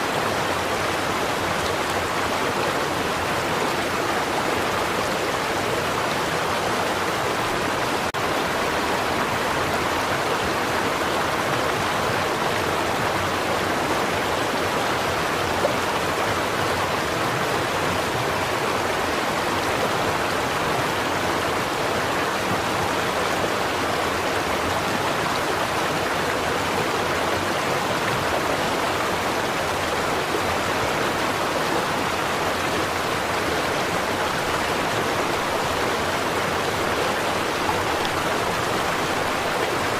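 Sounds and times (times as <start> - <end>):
stream flowing over stones: 0.0 - 39.9.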